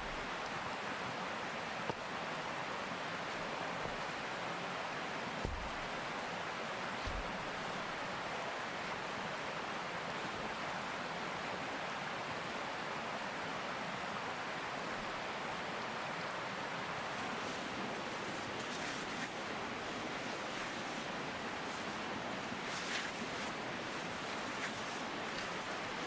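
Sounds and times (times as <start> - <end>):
stream water rushing: 0.0 - 26.0
faint low knocks: 7.0 - 7.9.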